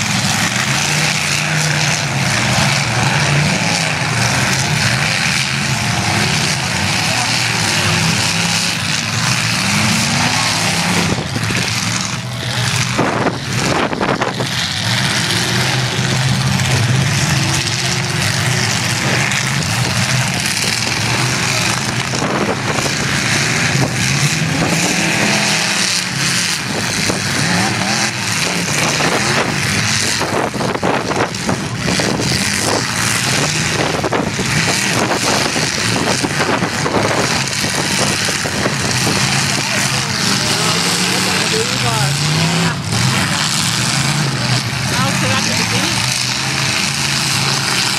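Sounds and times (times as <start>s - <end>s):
car engines revving: 0.0s - 47.9s.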